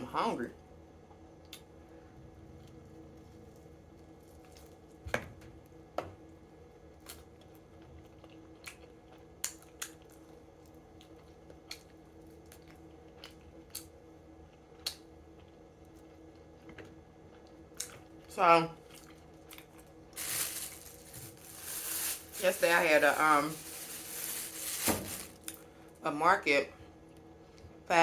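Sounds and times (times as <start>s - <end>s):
faint steady hum: 0.0s - 28.0s
wet chewing and mouth smacks: 7.1s - 10.2s.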